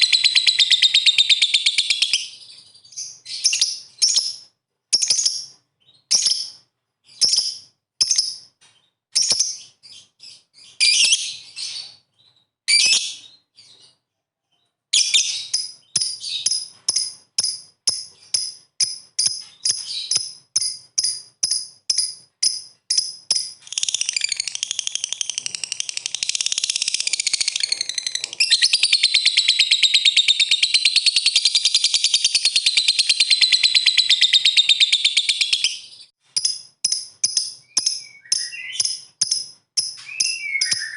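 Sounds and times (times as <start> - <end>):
bird chirping and trilling: 0.0 - 14.0, 14.6 - 40.9.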